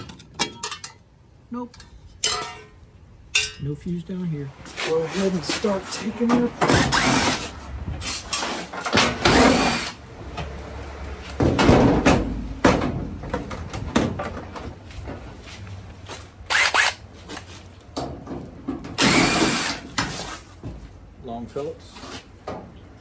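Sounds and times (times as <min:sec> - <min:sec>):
sheet metal knocks and clunks: 0:11.4 - 0:15.3, 0:18.0 - 0:19.0.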